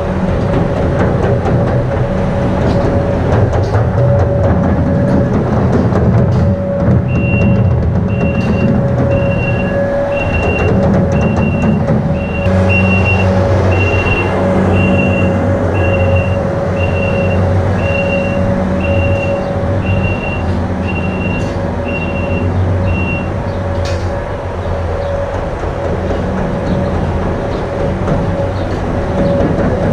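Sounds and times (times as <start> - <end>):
vehicle engine running: 0.0 - 29.9
reversing alarm beeping: 4.0 - 25.1.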